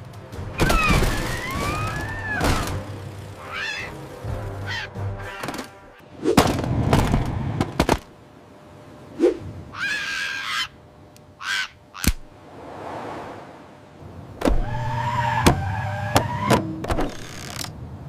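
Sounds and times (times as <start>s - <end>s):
background music: 0.0s - 6.2s
cartoon seagull squawks: 0.6s - 2.7s, 3.4s - 4.0s, 4.6s - 5.7s, 9.7s - 10.8s, 11.4s - 12.2s.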